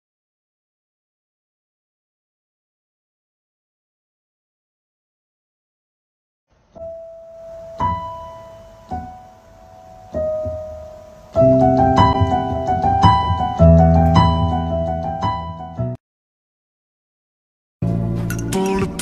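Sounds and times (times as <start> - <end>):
piano music: 6.8 - 16.0.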